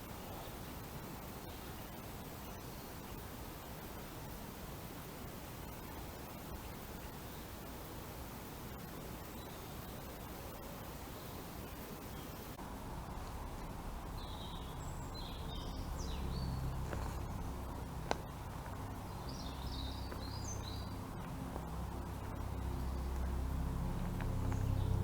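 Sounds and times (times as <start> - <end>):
low outdoor rumble: 0.0 - 25.0
songbird chirping: 8.7 - 25.0.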